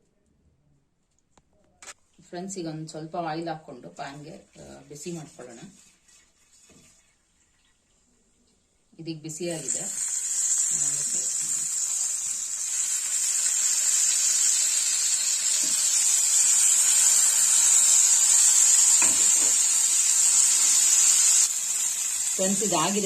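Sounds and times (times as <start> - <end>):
hot oil sizzling in a frying pan: 4.0 - 7.2, 9.2 - 23.0.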